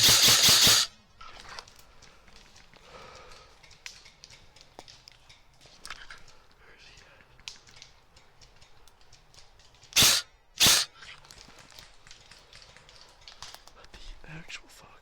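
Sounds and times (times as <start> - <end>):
airsoft gun bursts: 0.0 - 1.0, 9.9 - 11.0
faint clicks and rustles: 0.1 - 15.0.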